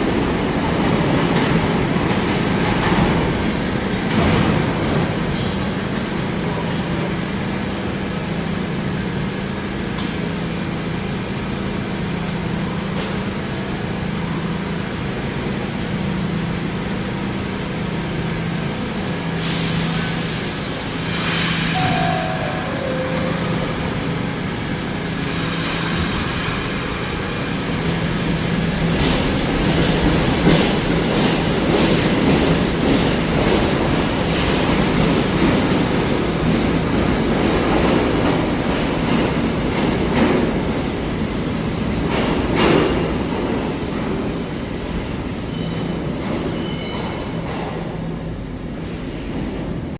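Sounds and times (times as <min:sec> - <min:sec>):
subway train rumbling: 0:00.0 - 0:49.9
burst of hiss: 0:19.4 - 0:23.1.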